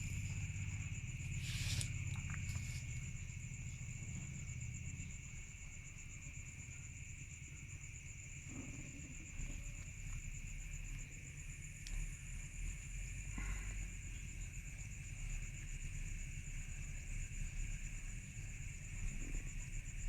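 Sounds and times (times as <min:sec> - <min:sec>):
insects droning: 0:00.0 - 0:20.0
brief rustle: 0:01.4 - 0:02.9.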